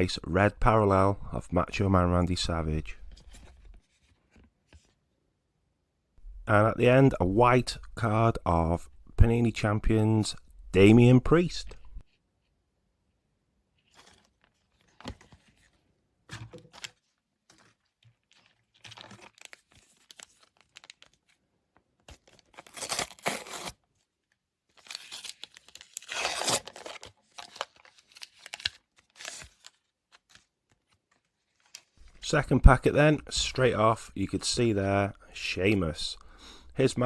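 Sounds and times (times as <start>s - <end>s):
wrapper tearing and crinkling: 18.2s - 21.4s, 22.1s - 23.8s, 24.7s - 30.5s.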